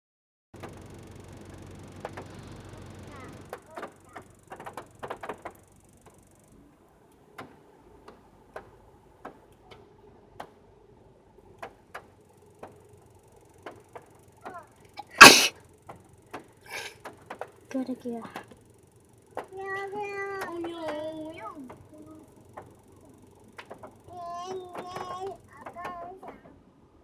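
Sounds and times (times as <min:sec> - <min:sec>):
person sneezing loudly: 0:15.0 - 0:15.5, 0:16.7 - 0:16.9.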